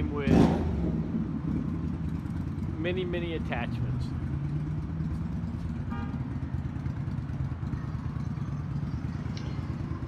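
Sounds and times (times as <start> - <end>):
engine idling: 4.2 - 10.0.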